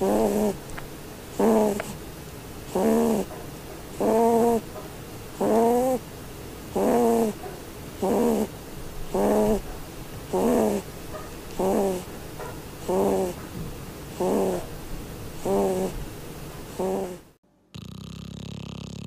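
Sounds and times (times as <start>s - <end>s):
small pet snoring: 0.0s - 0.6s, 1.3s - 2.0s, 2.7s - 3.3s, 4.0s - 4.7s, 5.4s - 6.0s, 6.7s - 7.4s, 8.0s - 8.5s, 9.1s - 9.6s, 10.3s - 10.9s, 11.5s - 12.1s, 12.8s - 13.4s, 14.1s - 14.7s, 15.4s - 16.0s, 16.7s - 19.0s.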